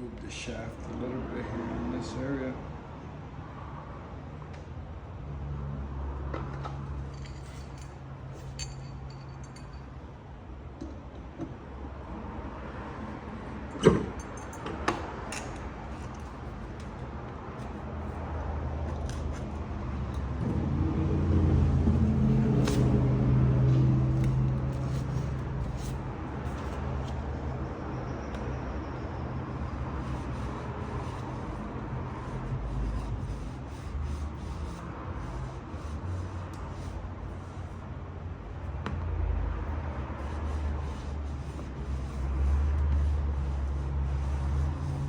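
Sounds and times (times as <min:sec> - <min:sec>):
low engine hum: 0:15.1 - 0:45.0.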